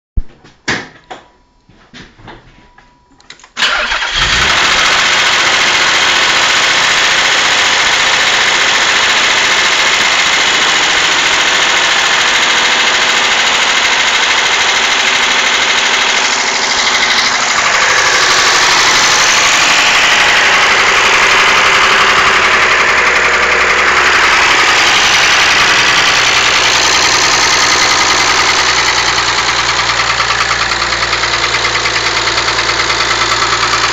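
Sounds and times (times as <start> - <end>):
car engine running with knocking: 4.2 - 33.9.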